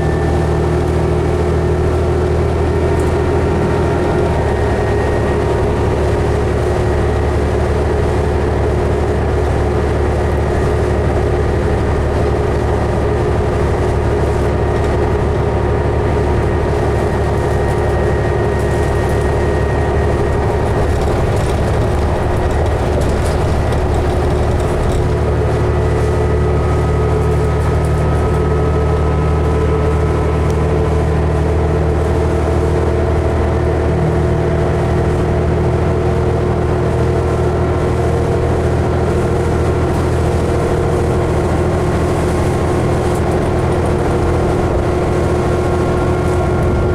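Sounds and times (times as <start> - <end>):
bus engine drone: 0.0 - 46.9
whining tones: 10.1 - 32.7.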